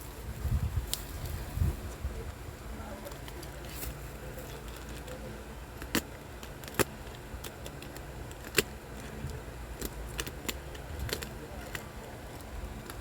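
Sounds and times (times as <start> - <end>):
steady low hum: 0.0 - 13.0
small hard items clicking: 4.5 - 13.0.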